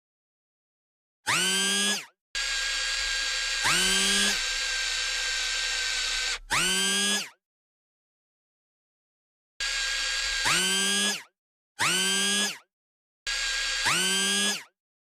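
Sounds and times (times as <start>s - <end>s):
small electric motor whirring: 1.3s - 7.4s, 9.6s - 12.6s, 13.3s - 14.7s.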